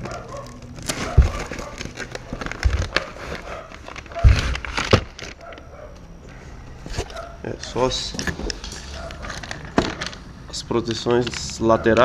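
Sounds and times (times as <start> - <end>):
packaging crinkling and rustling: 0.0 - 6.1, 6.8 - 12.0
dull thumps: 0.9 - 1.8, 4.1 - 5.2.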